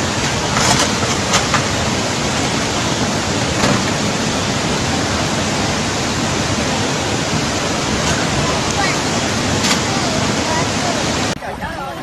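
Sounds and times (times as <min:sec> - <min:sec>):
floodwater rushing: 0:00.0 - 0:12.0.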